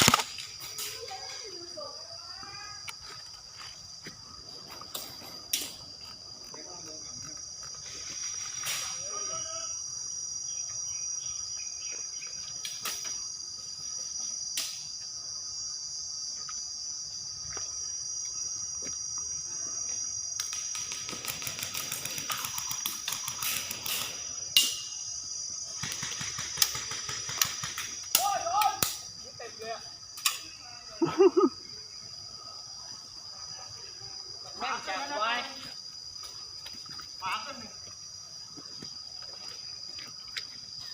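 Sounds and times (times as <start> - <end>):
bb guns firing: 0.0 - 0.5
insect chorus: 0.0 - 40.9.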